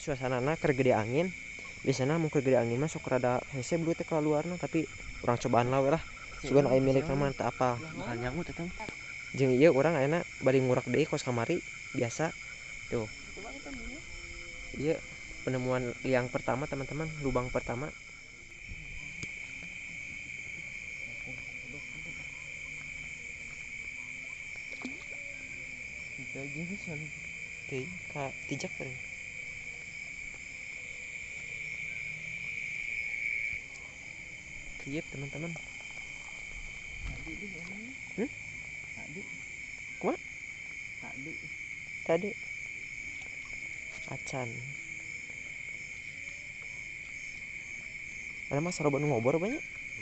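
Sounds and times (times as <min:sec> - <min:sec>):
crickets chirping: 0:00.0 - 0:50.0
night insects trilling: 0:00.0 - 0:50.0
person speaking: 0:05.3 - 0:08.9.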